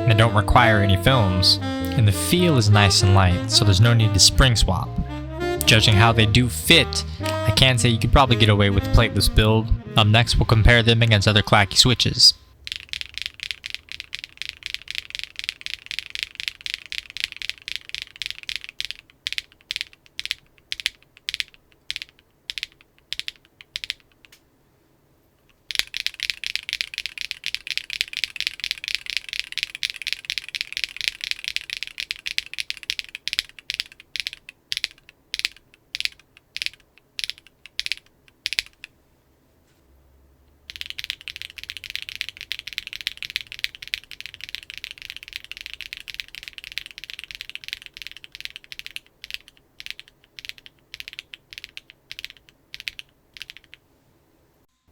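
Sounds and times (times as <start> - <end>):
mechanical keyboard typing: 12.5 - 24.4, 25.7 - 38.9, 40.7 - 53.8.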